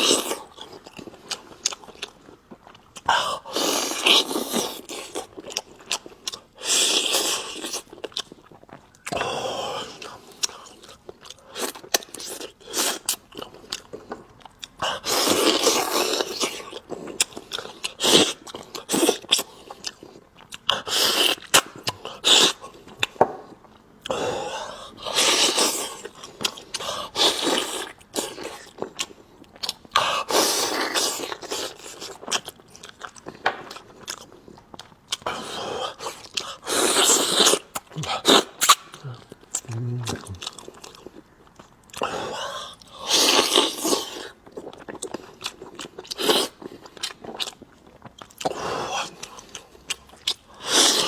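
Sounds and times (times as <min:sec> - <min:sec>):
chewing and crunching: 0:00.0 - 0:51.0
mouth clicks and smacks: 0:36.3 - 0:40.9.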